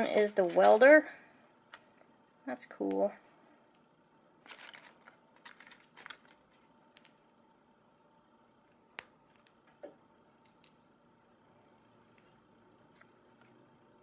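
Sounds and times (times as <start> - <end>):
plastic pieces clicking and rattling: 0.0 - 1.0, 4.4 - 7.3.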